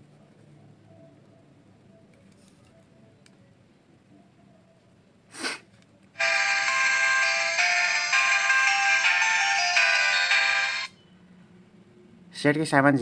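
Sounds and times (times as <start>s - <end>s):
phone power-on melody: 6.2s - 10.9s.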